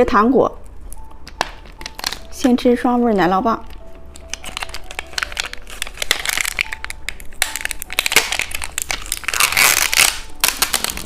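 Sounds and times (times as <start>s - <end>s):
plastic wrapper crinkling: 1.0s - 2.4s, 3.0s - 11.0s.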